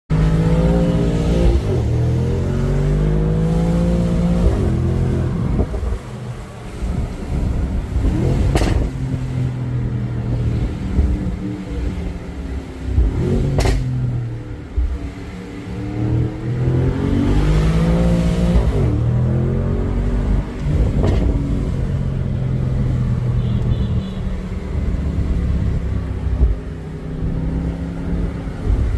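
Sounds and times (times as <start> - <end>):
sharp exhaust pop: 13.0 - 14.0.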